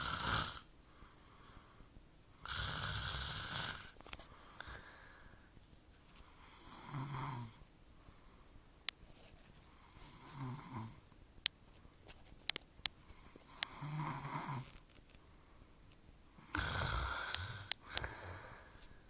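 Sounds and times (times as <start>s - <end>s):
man snoring: 0.0s - 0.7s, 2.4s - 4.0s, 6.3s - 7.6s, 9.8s - 11.1s, 13.1s - 14.8s, 16.4s - 18.7s
small sharp clicks: 11.4s - 13.8s.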